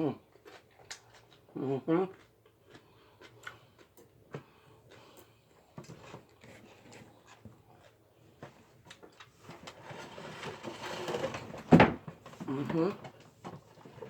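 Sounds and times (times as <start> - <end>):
soft chewing: 0.0 - 10.4.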